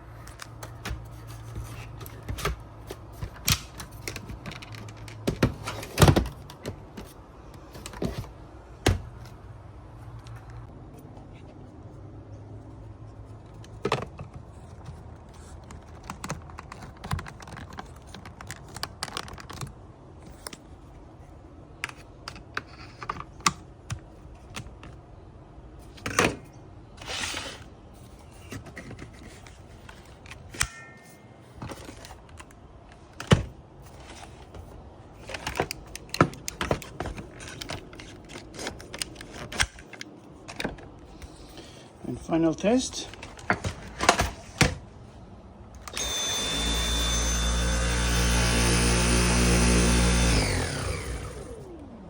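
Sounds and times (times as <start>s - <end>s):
plastic parts clicking and knocking: 0.2s - 9.3s, 13.5s - 20.6s, 21.8s - 25.0s, 35.2s - 41.0s.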